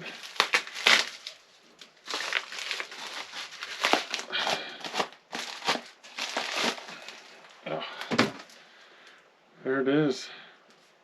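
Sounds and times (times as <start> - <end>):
packing material crinkling: 0.0 - 8.6.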